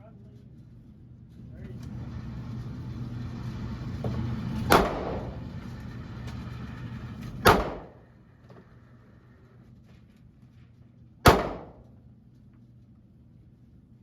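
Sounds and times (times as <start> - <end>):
handgun shots: 7.4 - 7.9, 11.2 - 11.8.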